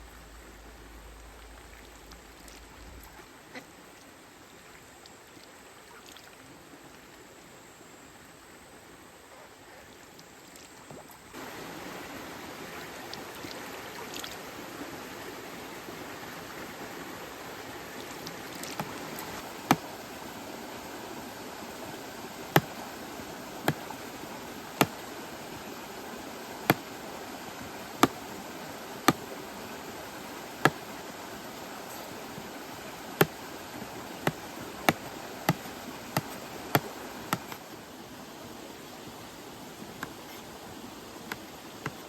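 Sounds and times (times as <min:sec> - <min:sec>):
running water rushing: 0:10.2 - 0:42.0
sharp knocks: 0:19.7 - 0:19.9, 0:34.2 - 0:37.6.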